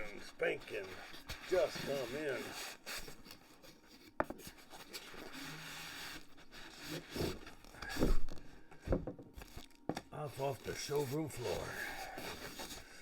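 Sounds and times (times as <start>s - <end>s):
box scraping and rubbing: 0.0s - 13.0s.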